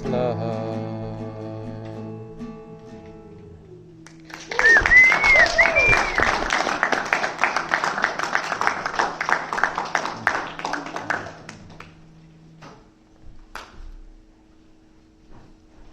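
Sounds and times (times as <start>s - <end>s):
congregation applauding: 4.0s - 12.0s.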